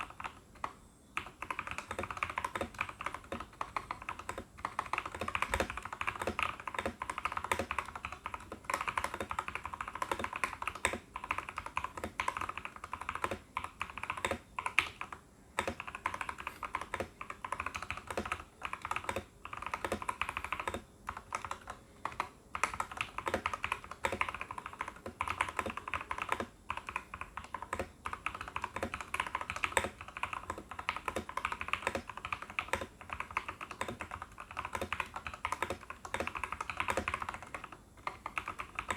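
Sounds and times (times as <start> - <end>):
mechanical keyboard typing: 0.0 - 38.9.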